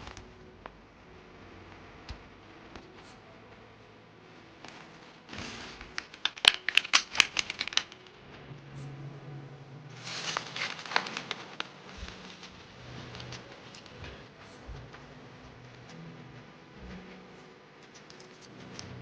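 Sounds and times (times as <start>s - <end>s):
plastic packaging crinkling: 5.0s - 8.4s, 10.0s - 14.3s.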